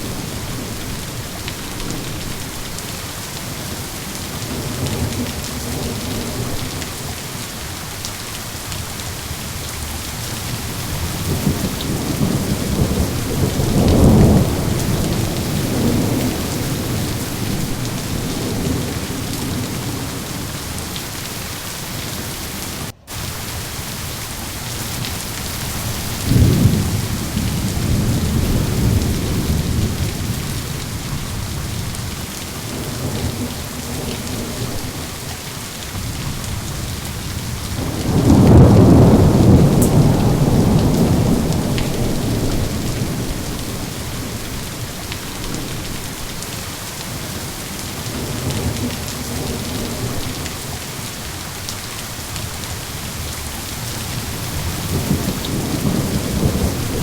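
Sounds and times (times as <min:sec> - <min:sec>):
heavy rain: 0:00.0 - 0:57.0
rolling thunder: 0:09.8 - 0:22.0, 0:24.5 - 0:35.3, 0:35.9 - 0:46.6, 0:53.2 - 0:57.0.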